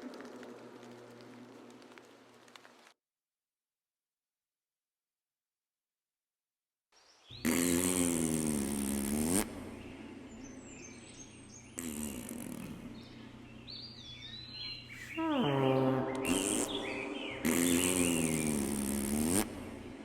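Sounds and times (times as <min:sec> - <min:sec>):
small birds chirping: 0:07.0 - 0:20.0
trumpet-like groaning tone: 0:15.2 - 0:19.1.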